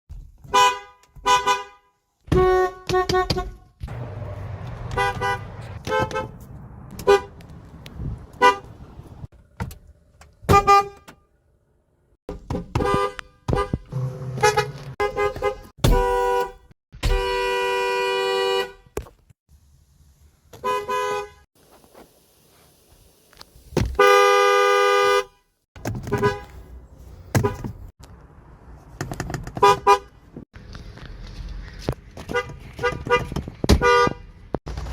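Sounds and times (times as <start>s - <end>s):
truck horn honking: 0.5s - 6.4s, 7.0s - 7.4s, 8.4s - 8.7s, 10.5s - 11.2s, 12.8s - 19.0s, 20.6s - 21.4s, 24.0s - 25.4s, 26.1s - 26.6s.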